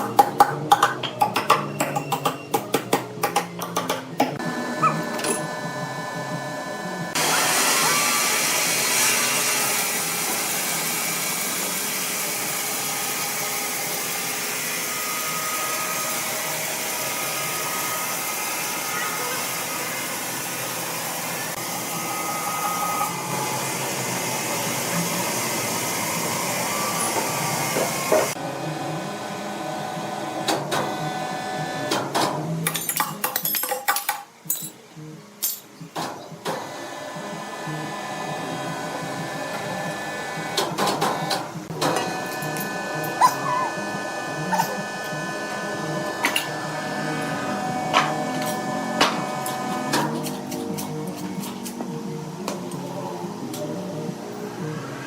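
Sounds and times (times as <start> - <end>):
sawmill machinery rushing noise: 4.4 - 31.8, 36.6 - 52.3.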